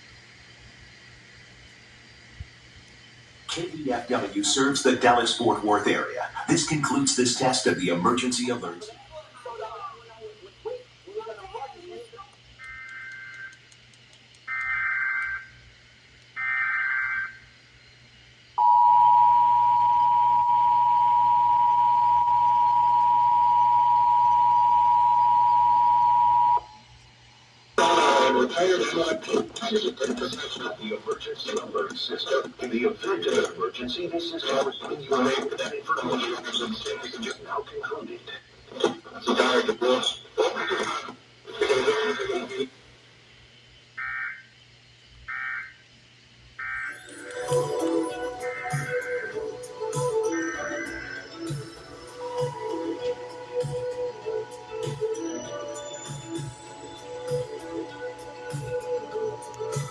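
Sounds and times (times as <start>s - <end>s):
faint low hum: 0.0s - 59.9s
loud steady two-tone signal: 12.6s - 13.6s, 14.5s - 17.7s, 18.6s - 27.0s, 46.6s - 59.9s
warbling digital data chirps: 18.6s - 26.9s.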